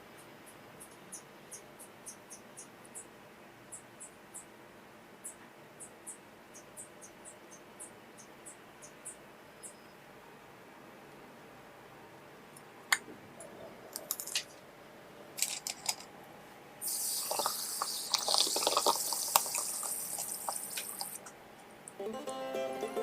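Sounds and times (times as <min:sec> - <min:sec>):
hissing crackling noise: 0:16.8 - 0:21.4.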